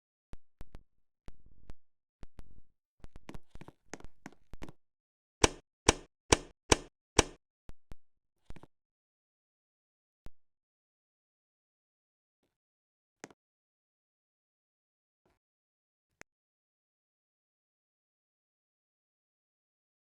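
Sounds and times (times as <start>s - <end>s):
ceiling fan knocking and clicking: 5.4s - 7.4s.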